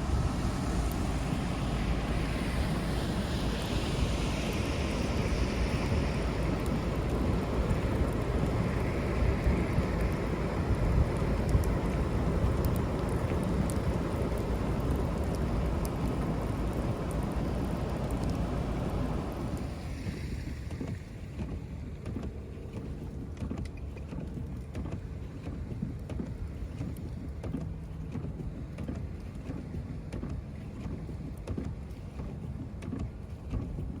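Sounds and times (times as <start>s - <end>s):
vehicle tyre hiss on wet street: 0.0s - 21.7s
faint ticks: 4.5s - 18.4s.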